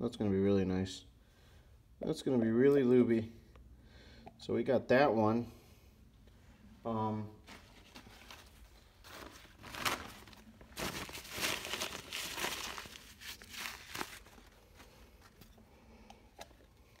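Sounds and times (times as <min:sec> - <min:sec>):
hands crinkling and rustling parts: 0:07.4 - 0:17.0.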